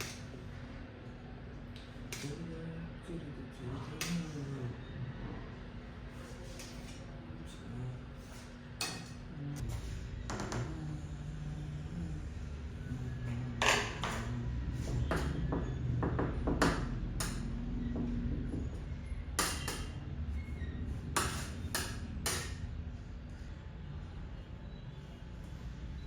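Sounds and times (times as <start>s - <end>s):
low steady hum: 0.0s - 26.0s
utensils clinking on kitchenware: 8.8s - 9.3s.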